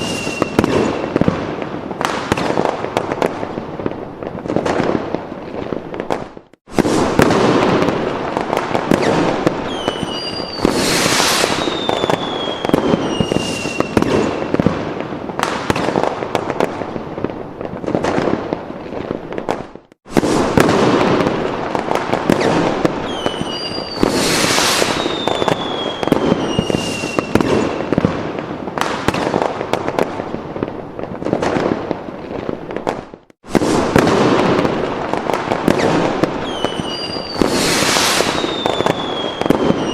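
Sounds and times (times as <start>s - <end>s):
whistling rockets: 0.0s - 3.3s, 6.1s - 16.8s, 19.5s - 28.2s, 33.5s - 39.9s
fireworks crackling bangs: 0.0s - 39.9s.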